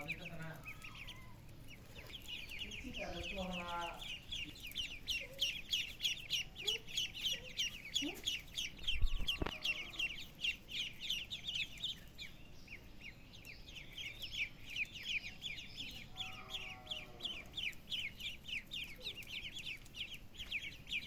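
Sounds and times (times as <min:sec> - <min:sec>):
chicks peeping: 0:00.0 - 0:21.0.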